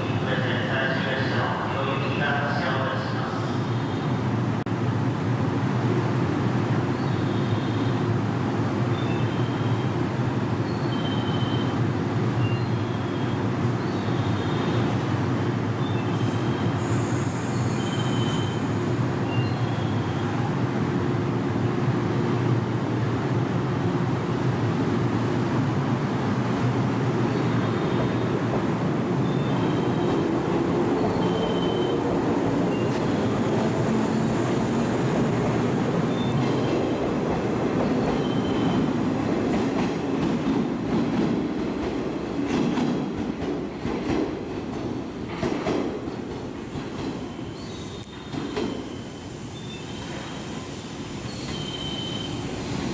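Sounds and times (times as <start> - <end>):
electric train rail noise: 8.0 - 52.9
high-pitched wheel squeals: 16.9 - 18.7.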